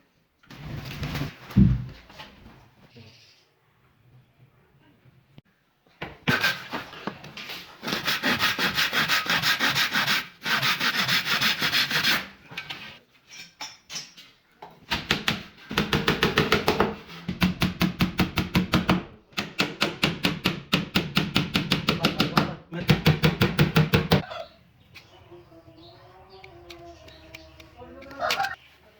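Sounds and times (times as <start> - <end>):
sandpaper rubbing wood: 7.8 - 12.3.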